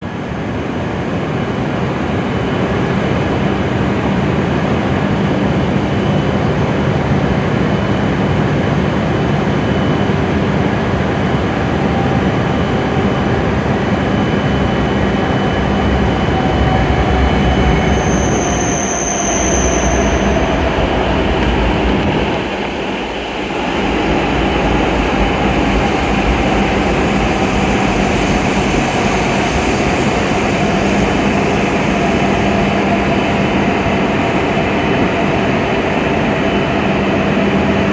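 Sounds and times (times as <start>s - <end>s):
falling whine of train: 0.0s - 37.9s
train running noise: 0.0s - 37.9s
high-pitched squeal: 10.8s - 34.8s.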